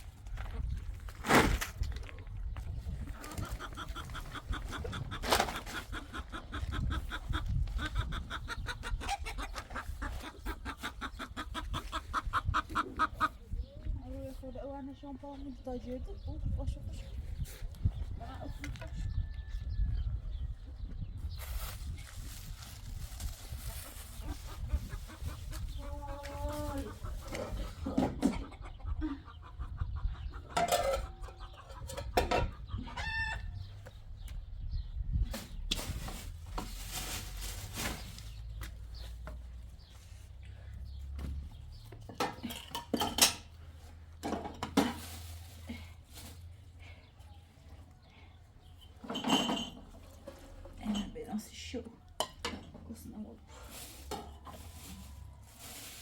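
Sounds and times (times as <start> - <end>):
chickens clucking: 2.4 - 21.4, 23.0 - 35.8.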